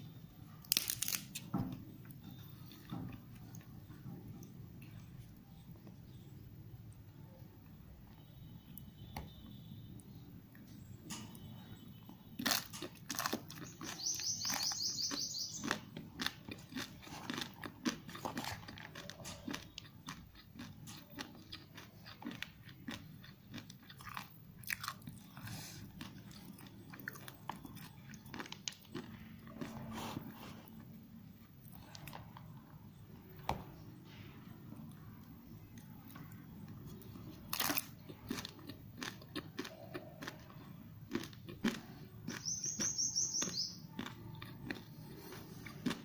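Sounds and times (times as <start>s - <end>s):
person chewing crunchy noodles: 0.6s - 1.4s, 12.4s - 31.0s, 35.7s - 46.0s.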